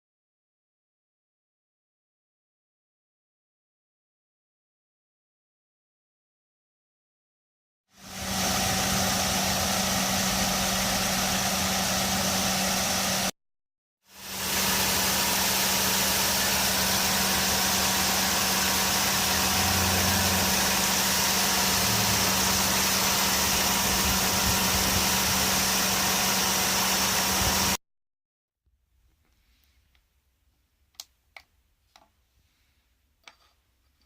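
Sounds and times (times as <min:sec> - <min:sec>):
air conditioning compressor hiss: 0:08.0 - 0:13.3
car engine idling: 0:08.1 - 0:13.2, 0:14.3 - 0:27.8.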